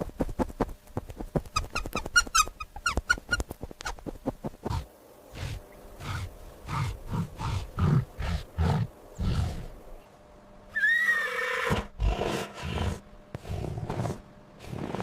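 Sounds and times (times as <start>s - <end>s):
animal low grunts: 4.7s - 9.8s.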